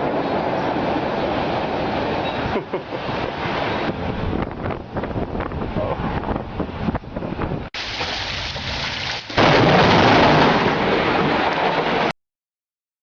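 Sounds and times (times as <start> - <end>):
wind: 0.0 - 12.1
loud thunderclap: 7.8 - 12.1
rain: 7.8 - 12.1.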